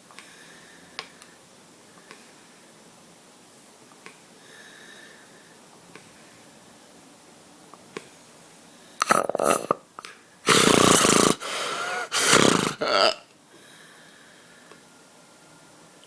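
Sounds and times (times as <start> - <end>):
person snoring loudly: 9.0 - 9.8, 10.5 - 13.2.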